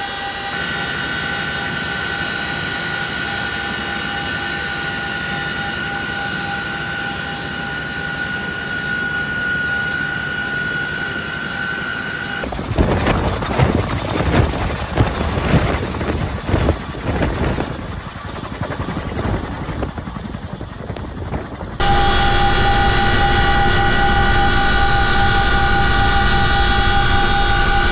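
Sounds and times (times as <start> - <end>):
helicopter turbine whining: 0.0 - 27.9
rushing rumble with thumps: 12.4 - 21.9.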